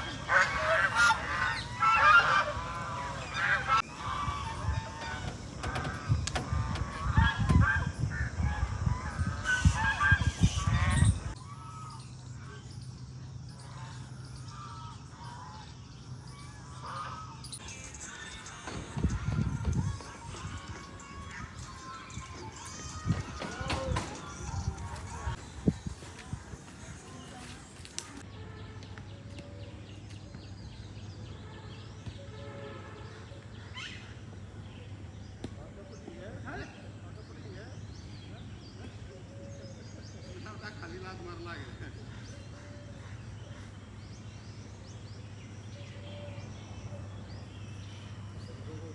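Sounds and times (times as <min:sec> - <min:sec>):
waterfowl calling: 0:00.0 - 0:12.6
low outdoor hum: 0:00.0 - 0:31.2
birds calling: 0:00.0 - 0:32.2, 0:33.0 - 0:48.9.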